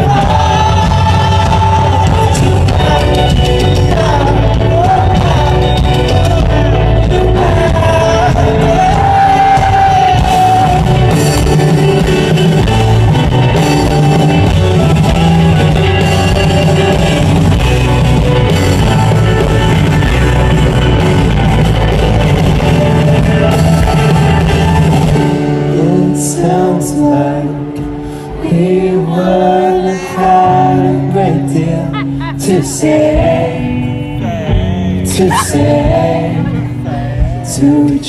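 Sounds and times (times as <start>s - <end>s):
person singing: 0.0s - 13.0s, 25.3s - 38.0s
live rock band: 0.0s - 38.0s.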